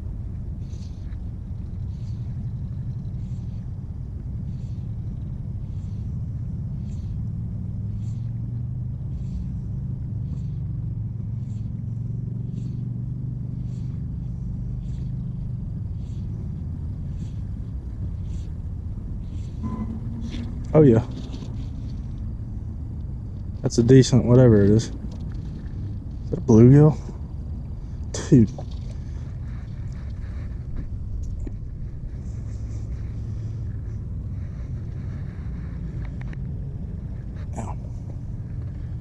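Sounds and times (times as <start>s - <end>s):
low rumble with hum: 0.0s - 39.0s
faint soft ticks: 36.0s - 36.5s.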